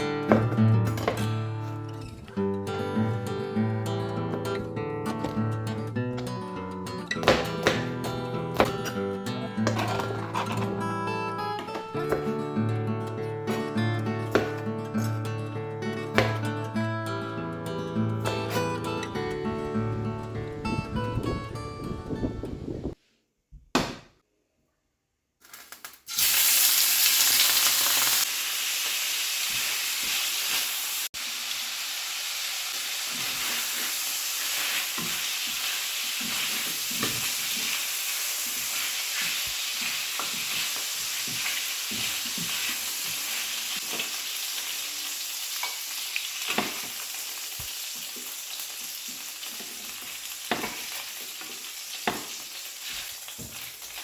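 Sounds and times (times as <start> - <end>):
utensil scraping the pan: 7.2 - 10.8, 33.0 - 44.1
food sizzling in hot oil: 25.5 - 54.0.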